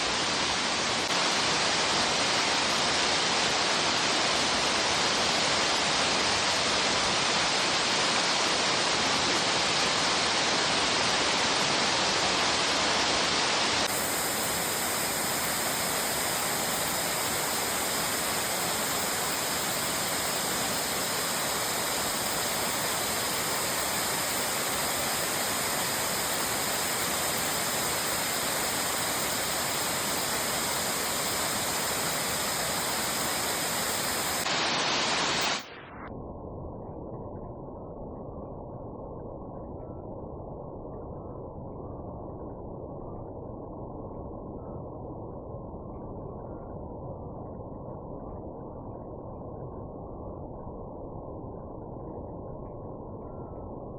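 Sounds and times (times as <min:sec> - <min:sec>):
waterfall rushing: 0:07.6 - 0:35.7.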